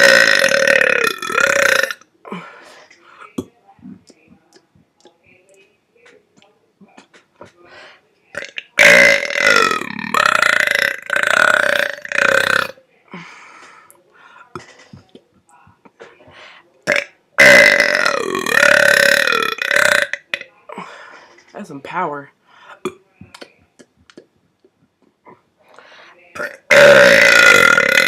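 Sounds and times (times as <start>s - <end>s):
man belching: 0.0s - 2.0s, 8.4s - 12.7s, 16.9s - 20.4s, 26.4s - 28.0s.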